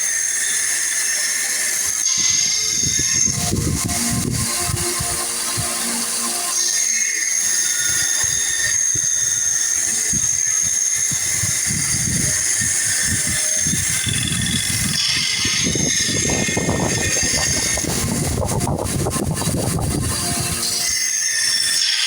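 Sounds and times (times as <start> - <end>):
sandpaper rubbing on wood: 14.6 - 20.9.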